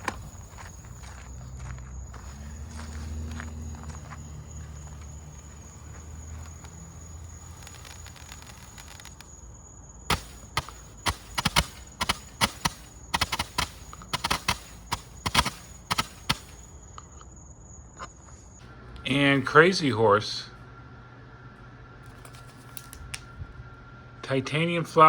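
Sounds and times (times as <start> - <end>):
low steady hum: 0.0 - 25.0
fireworks popping and cracking: 2.2 - 16.7.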